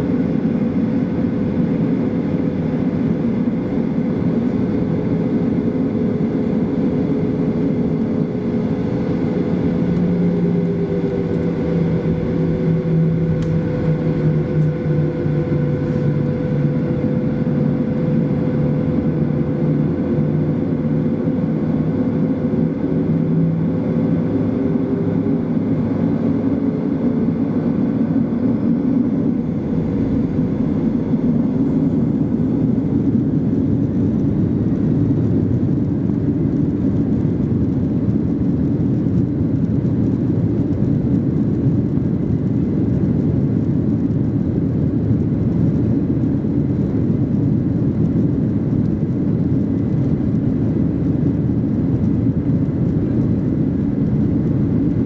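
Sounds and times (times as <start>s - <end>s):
jet engine and airflow rumble: 0.0s - 55.0s
steady engine tones: 0.0s - 55.0s.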